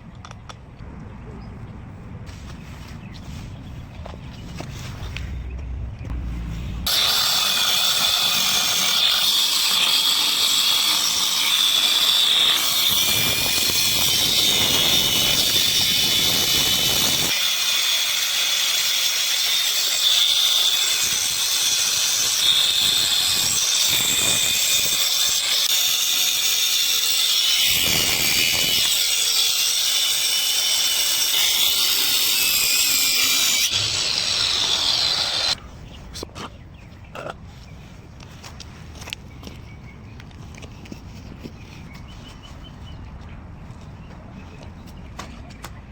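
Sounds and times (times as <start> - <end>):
angle grinder whining: 6.9 - 35.6.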